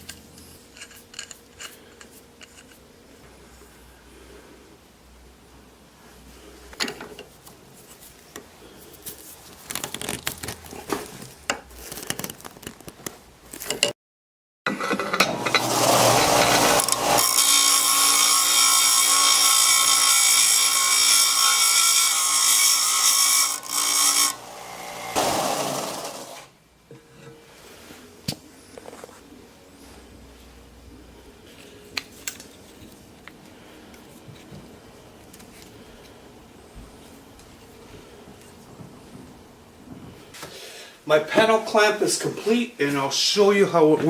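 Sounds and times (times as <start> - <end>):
power tool on wood: 15.0 - 26.5.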